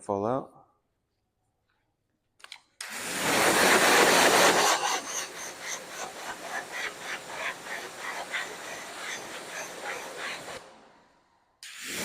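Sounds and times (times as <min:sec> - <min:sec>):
pressure washer spray hissing: 0:02.9 - 0:10.6.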